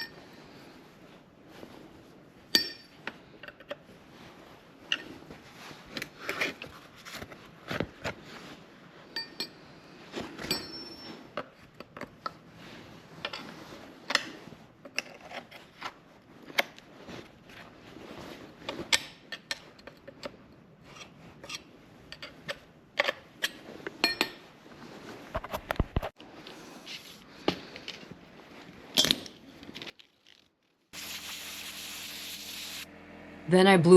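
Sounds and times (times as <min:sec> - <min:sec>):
light metallic clinks: 0:10.4 - 0:11.1.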